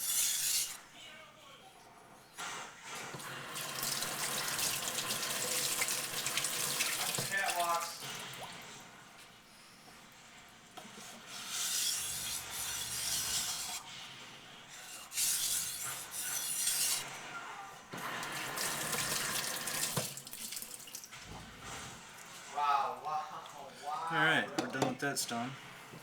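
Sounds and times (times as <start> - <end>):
knife scraping on wet waterstone: 0.0 - 0.8, 11.2 - 14.0, 14.8 - 17.2.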